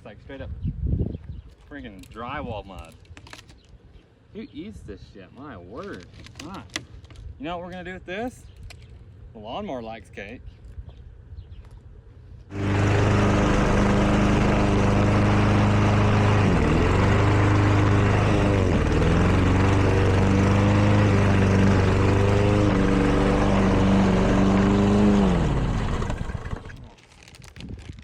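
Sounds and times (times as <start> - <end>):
lawn mower engine bogging down: 12.5 - 27.0.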